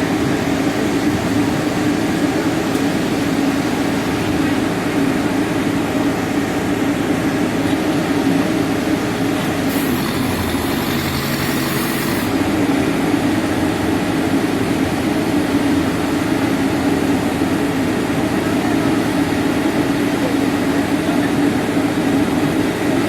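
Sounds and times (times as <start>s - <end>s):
diesel engine running under load: 0.0s - 23.0s
hiss: 9.4s - 12.4s.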